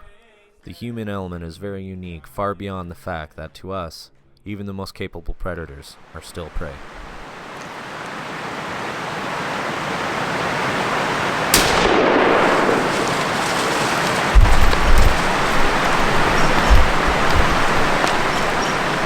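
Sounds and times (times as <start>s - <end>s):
rain hissing: 6.0s - 19.0s
thunderclap and rumbling: 9.4s - 19.0s
deep low thuds: 14.3s - 19.0s.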